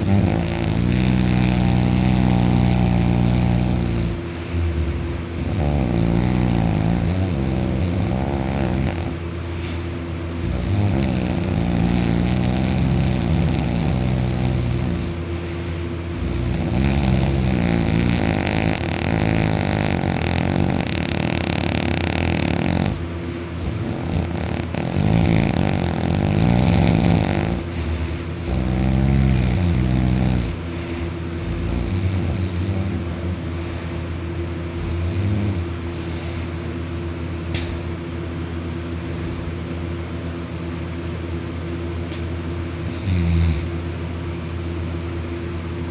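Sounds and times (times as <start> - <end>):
man snoring loudly: 0.0 - 9.8, 10.4 - 15.2, 16.2 - 23.0, 23.6 - 33.4, 34.7 - 36.3, 42.8 - 43.7.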